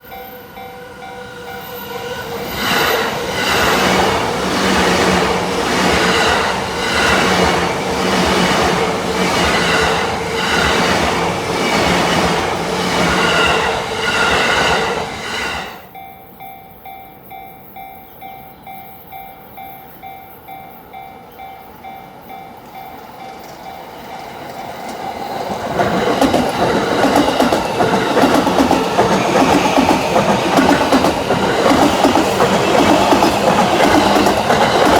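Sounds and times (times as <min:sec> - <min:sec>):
level crossing warning bells: 0:00.0 - 0:15.1, 0:15.8 - 0:34.9
train passing: 0:00.0 - 0:34.9
train wheels clacking over rail joints: 0:24.5 - 0:34.9.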